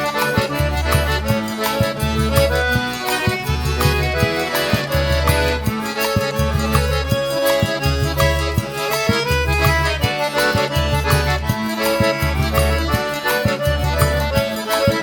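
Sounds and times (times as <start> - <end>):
accordion melody: 0.0 - 15.0
steady low drum beat: 0.0 - 15.0.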